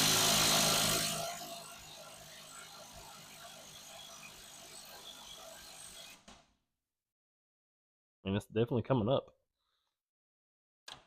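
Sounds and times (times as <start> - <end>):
impact wrench running: 0.0 - 5.9.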